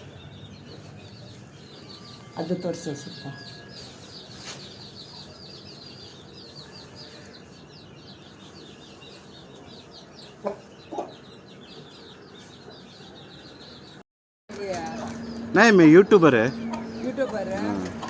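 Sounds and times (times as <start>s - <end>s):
chickens chirping: 0.0s - 14.0s, 14.6s - 18.0s
chicken clucks: 10.2s - 11.3s.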